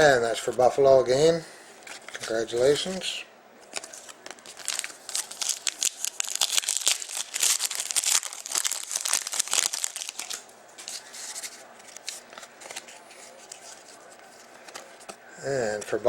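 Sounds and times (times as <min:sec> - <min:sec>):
card pack wrapper crinkling and tearing: 0:03.7 - 0:14.9.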